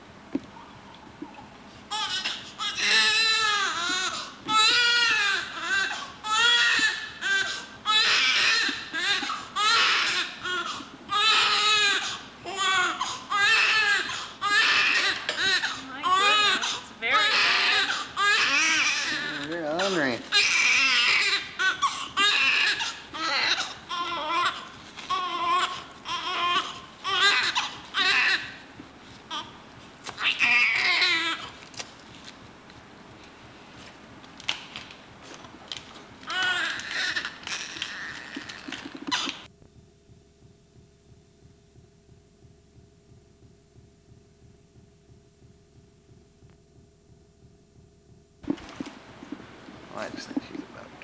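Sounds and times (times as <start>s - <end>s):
newborn baby crying: 1.9s - 28.7s, 29.3s - 29.6s, 30.2s - 31.6s, 36.2s - 39.5s.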